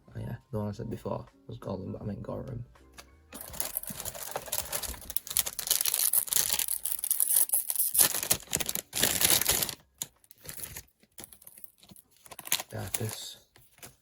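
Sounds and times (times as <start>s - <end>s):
wrapper tearing and crinkling: 3.4s - 13.9s.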